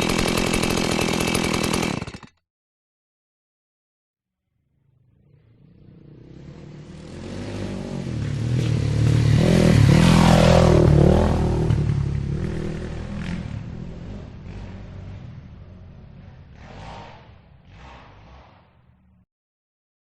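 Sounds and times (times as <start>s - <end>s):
motorcycle engine passing by: 4.8s - 19.2s.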